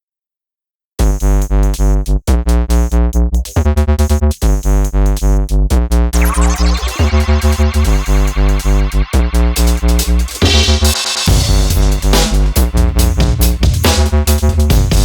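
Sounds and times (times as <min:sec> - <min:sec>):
drum machine beat: 0:01.0 - 0:15.0
synthesizer: 0:06.2 - 0:15.0.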